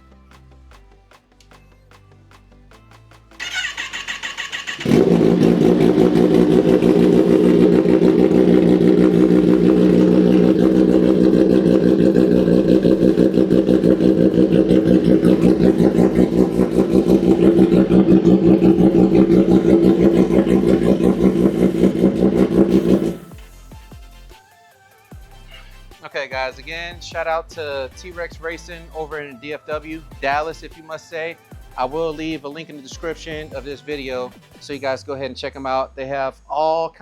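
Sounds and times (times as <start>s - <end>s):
electric starter cranking: 3.4s - 23.4s
motorcycle engine idling: 3.4s - 23.4s.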